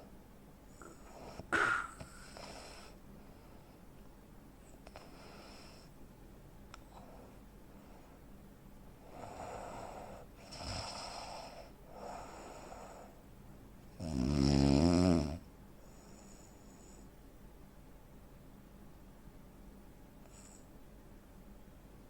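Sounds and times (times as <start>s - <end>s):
noisy breaths: 0.7s - 3.9s, 4.9s - 6.0s, 6.8s - 8.4s, 9.0s - 13.3s, 15.8s - 17.2s, 20.2s - 20.8s
man snoring heavily: 9.2s - 12.8s, 14.0s - 15.4s.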